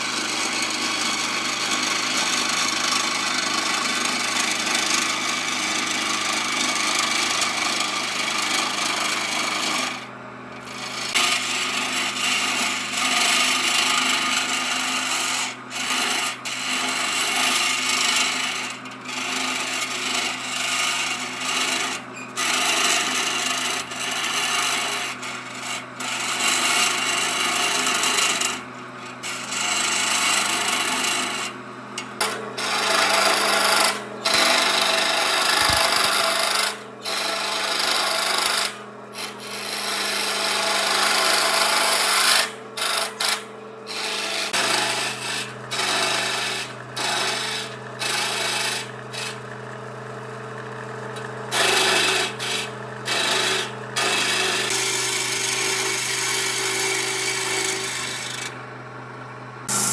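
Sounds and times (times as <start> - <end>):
wood being sanded: 32.6 - 49.3, 51.5 - 58.4, 59.7 - 59.9.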